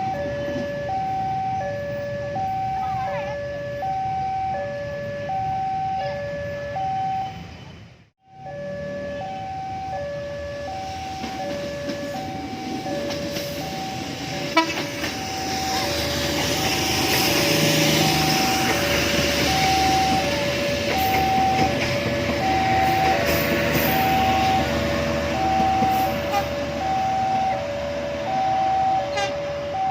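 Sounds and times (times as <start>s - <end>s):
two-tone crossing warning alarm: 0.0s - 29.9s
approaching train running noise: 8.3s - 29.9s.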